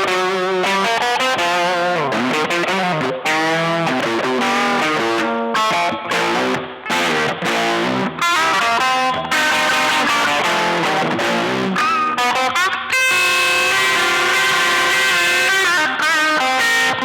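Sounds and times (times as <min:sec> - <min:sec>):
overdriven electric guitar: 0:00.0 - 0:17.0.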